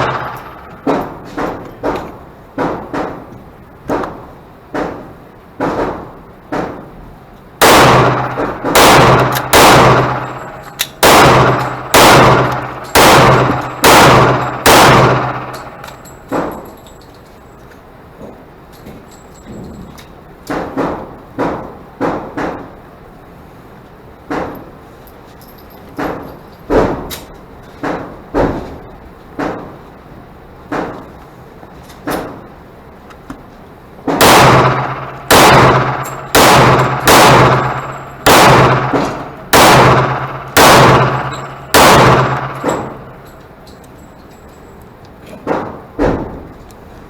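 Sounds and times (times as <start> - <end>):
pistol shots: 0.0 - 3.3, 7.6 - 16.6, 34.1 - 43.6.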